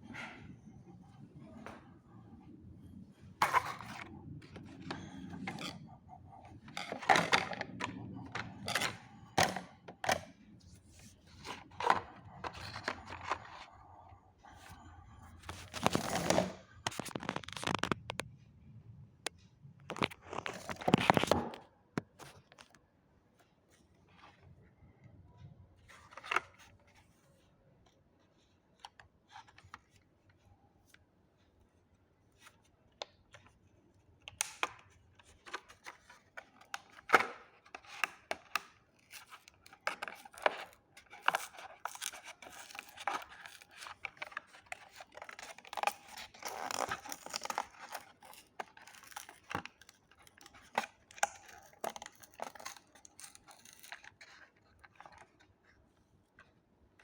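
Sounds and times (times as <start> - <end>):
cardboard and plastic tearing: 15.5 - 18.1, 35.5 - 55.2.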